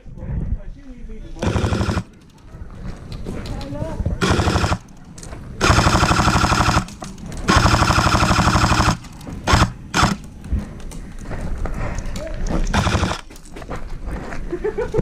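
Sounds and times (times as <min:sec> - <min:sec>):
airsoft gun firing bursts: 0:01.4 - 0:02.2, 0:04.2 - 0:04.9, 0:05.6 - 0:10.3, 0:12.7 - 0:13.3.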